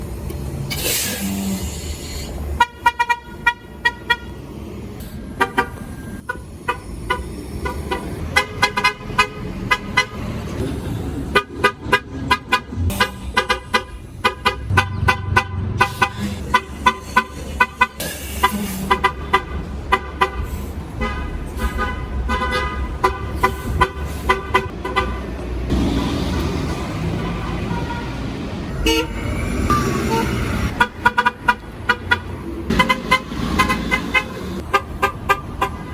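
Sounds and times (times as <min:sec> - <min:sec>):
engine and traffic rumble: 0:00.0 - 0:35.9
bus horn short beeps: 0:28.8 - 0:32.2.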